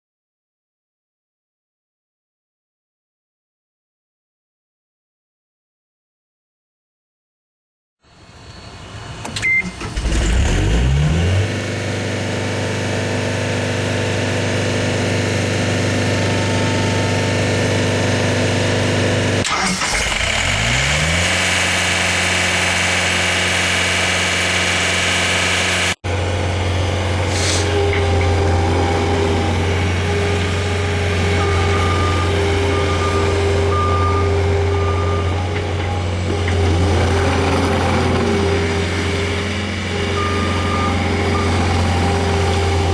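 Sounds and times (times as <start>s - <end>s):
diesel engine starting and revving: 8.5s - 42.9s.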